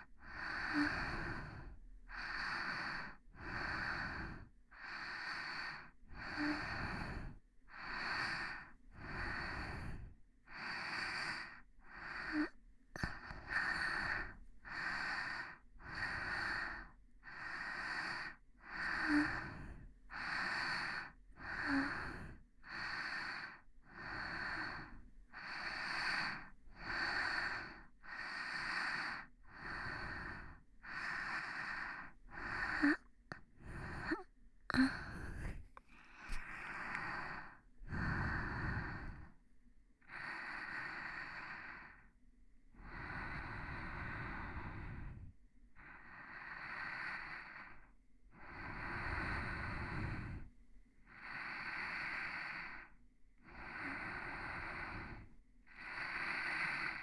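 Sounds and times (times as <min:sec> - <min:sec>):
soft breathing: 0:00.0 - 0:39.4.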